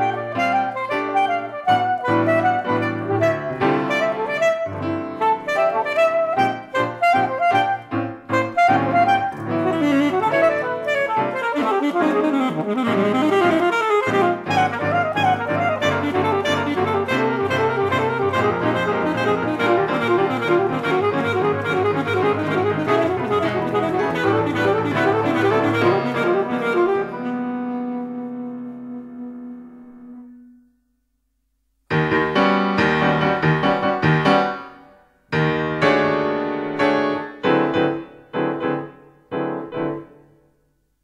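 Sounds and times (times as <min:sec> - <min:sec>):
alto saxophone: 0:00.0 - 0:30.7
piano: 0:00.0 - 0:41.0.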